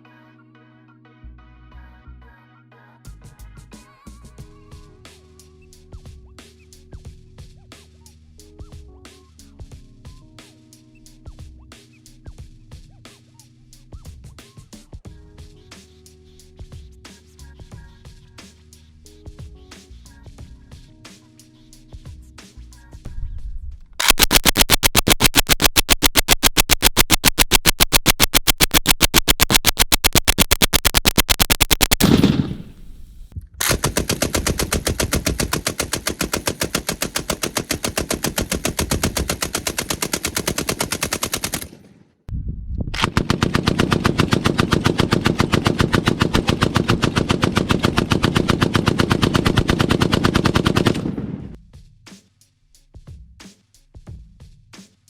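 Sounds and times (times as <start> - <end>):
suppressed machine gun bursts: 24.0 - 41.9, 43.0 - 51.6.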